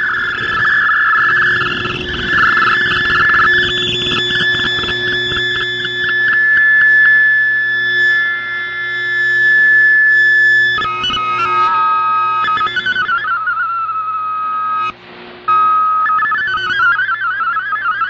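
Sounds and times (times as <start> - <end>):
warbling tone: 0.0 - 7.2, 15.6 - 18.0
radio electronic tones: 0.0 - 18.0.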